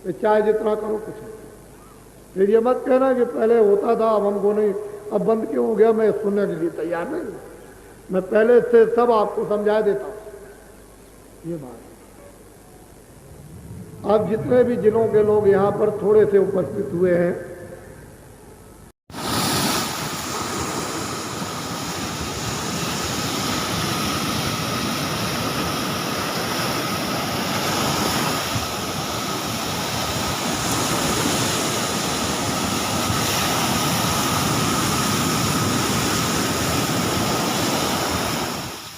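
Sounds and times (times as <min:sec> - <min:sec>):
steady rushing noise: 0:12.4 - 0:18.1, 0:19.1 - 0:38.9.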